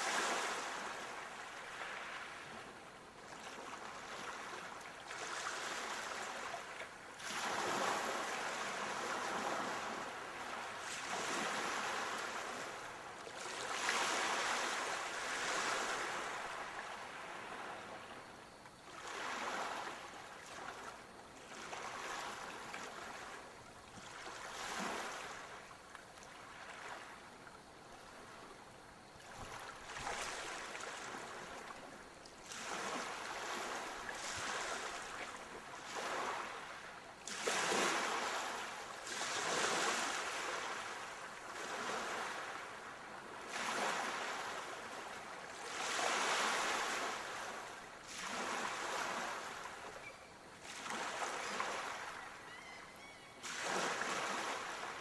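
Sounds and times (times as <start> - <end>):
sea waves breaking: 0.0 - 2.8, 3.4 - 18.1, 29.2 - 55.0.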